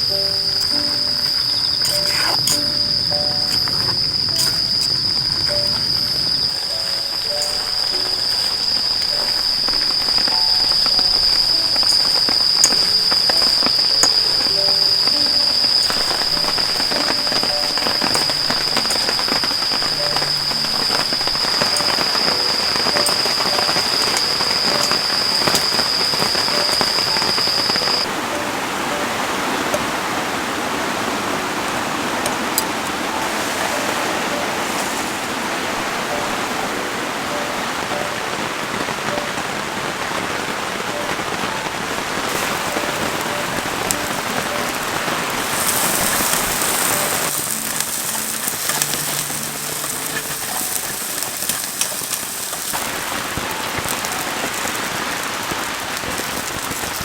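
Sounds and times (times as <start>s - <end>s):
high-pitched tone: 0.0s - 30.0s, 40.3s - 54.6s
steady rain falling: 0.0s - 57.0s.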